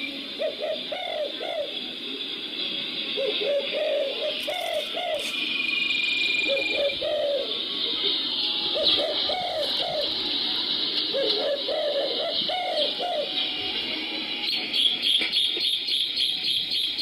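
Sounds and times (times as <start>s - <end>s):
dove cooing from speaker: 0.0s - 1.8s, 3.1s - 5.4s, 6.5s - 13.6s
steady high hiss: 0.0s - 15.1s.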